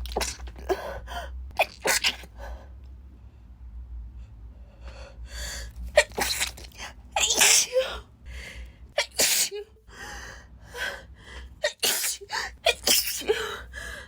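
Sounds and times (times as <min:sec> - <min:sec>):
woman sneezing: 0:07.2 - 0:08.0, 0:09.0 - 0:09.7, 0:11.6 - 0:13.4.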